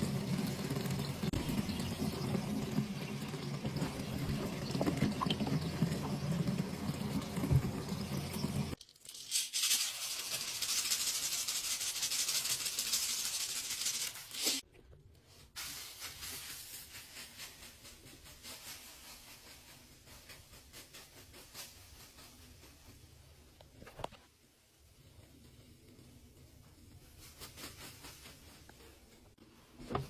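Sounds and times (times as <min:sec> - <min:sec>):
soap suds fizzing and crackling: 0:00.0 - 0:14.6.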